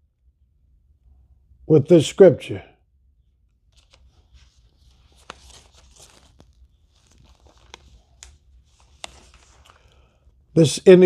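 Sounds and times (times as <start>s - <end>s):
thin paper pages rustling: 3.5s - 10.3s.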